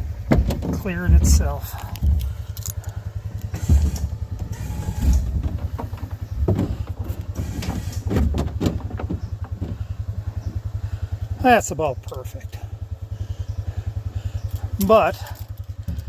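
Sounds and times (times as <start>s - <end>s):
knocks and clunks: 0.0s - 10.7s
engine running with fast pulse: 0.0s - 16.0s.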